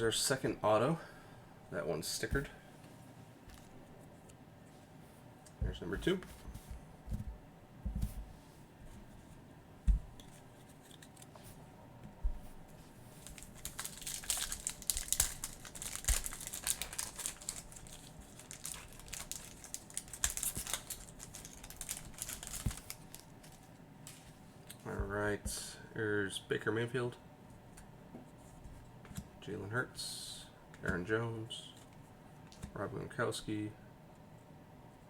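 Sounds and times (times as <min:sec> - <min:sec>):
wrapper crinkling and tearing: 0:13.2 - 0:24.2.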